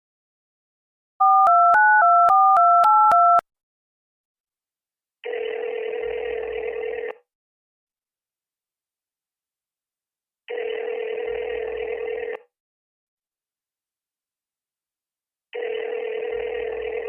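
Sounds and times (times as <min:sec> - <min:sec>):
phone keypad touch tones: 0:01.2 - 0:03.4.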